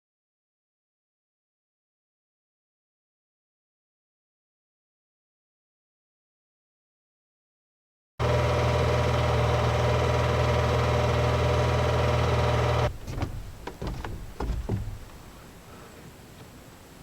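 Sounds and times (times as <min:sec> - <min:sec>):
motor humming: 0:08.2 - 0:15.2
sharp clicks and knocks: 0:08.3 - 0:15.3.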